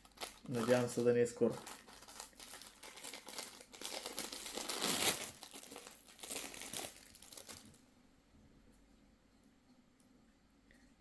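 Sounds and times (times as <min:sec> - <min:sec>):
packaging crinkling and rustling: 0:00.0 - 0:07.8.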